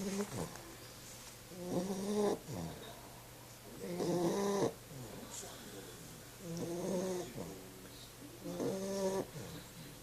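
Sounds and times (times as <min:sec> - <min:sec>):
puppy snoring: 0:00.0 - 0:00.6, 0:01.5 - 0:02.9, 0:03.8 - 0:05.3, 0:06.4 - 0:07.8, 0:08.4 - 0:09.7.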